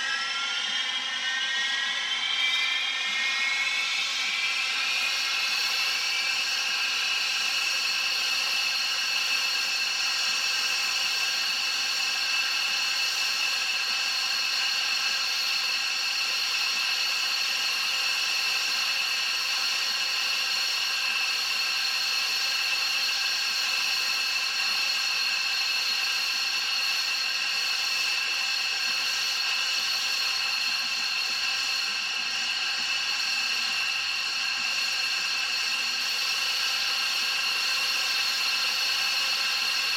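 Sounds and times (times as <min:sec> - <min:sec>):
jet engines whining at idle: 0:00.0 - 0:39.9.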